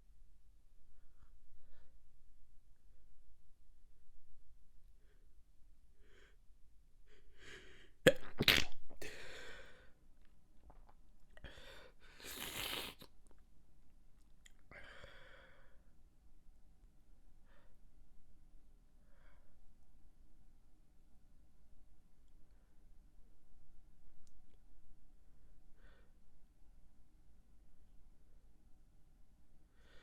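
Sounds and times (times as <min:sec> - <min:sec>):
person stifling a sneeze: 0:08.1 - 0:09.2, 0:12.2 - 0:13.0.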